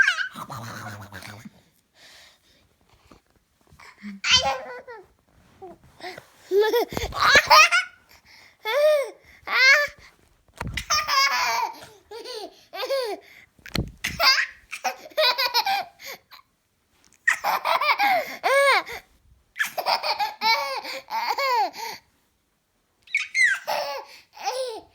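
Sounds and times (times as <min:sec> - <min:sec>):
baby giggling: 0:04.1 - 0:05.1, 0:06.0 - 0:08.0, 0:10.8 - 0:13.2, 0:23.2 - 0:24.9.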